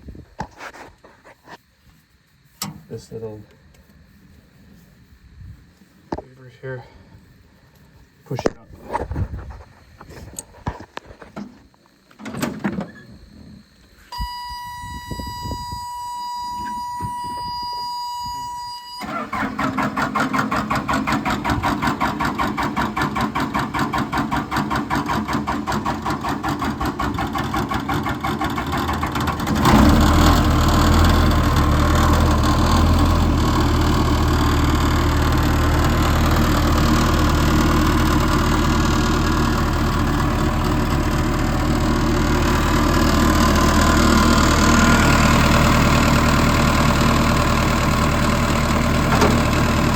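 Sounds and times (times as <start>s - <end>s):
diesel engine cranking and starting: 12.1s - 49.9s
electronic buzzer tone: 14.1s - 19.1s.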